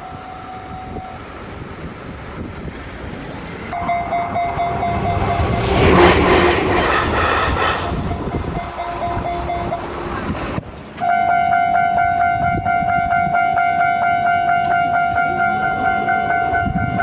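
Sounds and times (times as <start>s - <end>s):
railroad crossing bell ringing: 0.0s - 1.4s, 3.7s - 17.0s
train running over rails: 0.0s - 17.0s
level crossing alarm ringing: 3.7s - 7.2s, 7.9s - 10.1s.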